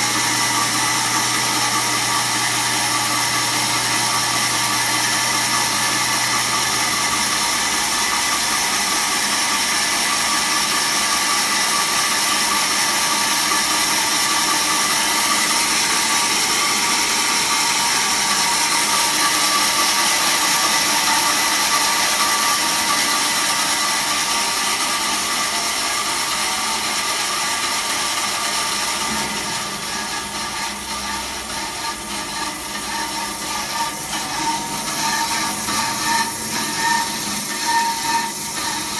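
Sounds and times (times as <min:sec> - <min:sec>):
band saw cutting: 0:00.0 - 0:38.9.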